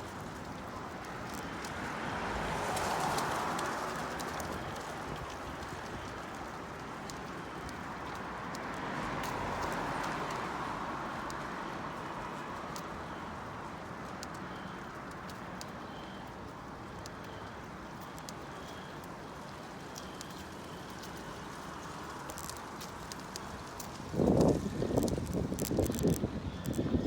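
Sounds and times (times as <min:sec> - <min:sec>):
wind rushing over microphone: 0:23.6 - 0:27.0.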